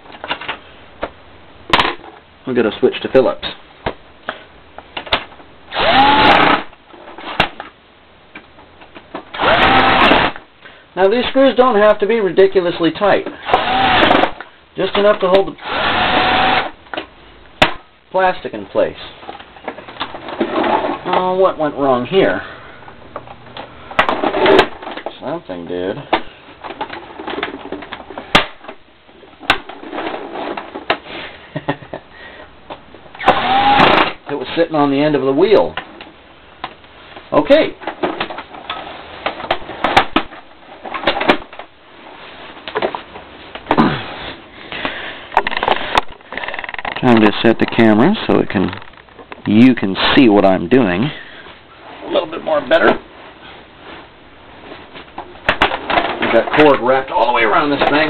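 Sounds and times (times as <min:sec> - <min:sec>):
power screwdriver whining: 0:05.7 - 0:06.7, 0:09.3 - 0:10.4, 0:13.4 - 0:14.3, 0:15.6 - 0:16.7, 0:33.2 - 0:34.2
plastic scraping: 0:19.2 - 0:21.4, 0:44.8 - 0:49.4.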